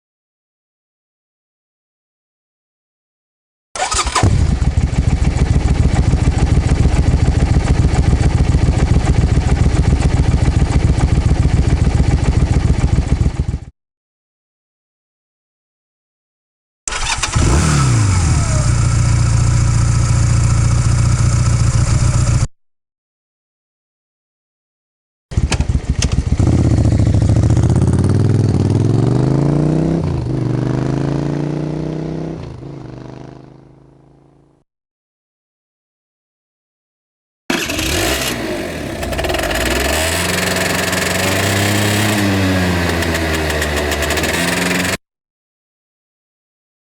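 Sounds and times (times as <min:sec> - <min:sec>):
motorcycle engine revving and idling: 0:03.8 - 0:13.7, 0:16.9 - 0:22.5, 0:25.3 - 0:34.6, 0:37.5 - 0:45.0.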